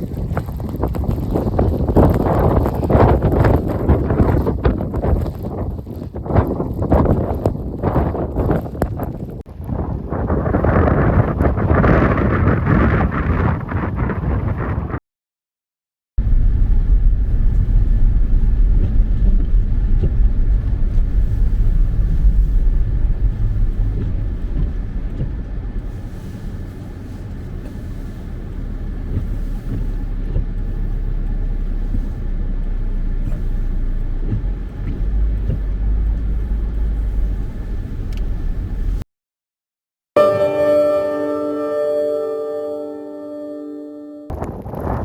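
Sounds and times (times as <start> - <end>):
car engine and tyres rumbling: 0.0 - 10.8, 16.2 - 39.0.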